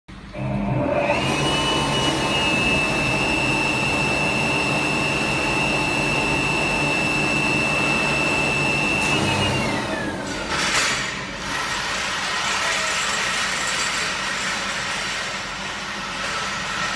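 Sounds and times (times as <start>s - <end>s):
motor machine whining: 0.4s - 12.2s.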